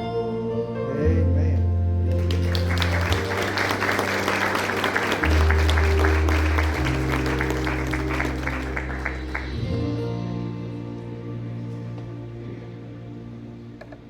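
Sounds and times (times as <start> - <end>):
congregation applauding: 2.1 - 9.8
sustained music chords: 2.1 - 14.0.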